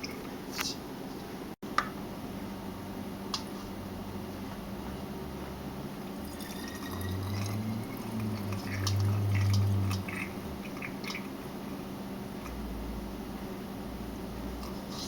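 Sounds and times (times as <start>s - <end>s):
low hum: 2.0s - 15.0s
syrup pouring and dripping: 6.2s - 11.4s.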